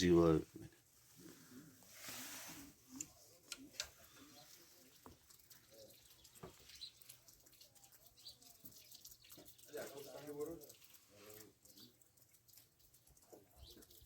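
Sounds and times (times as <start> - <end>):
faint clicks and ticks: 2.9 - 14.0.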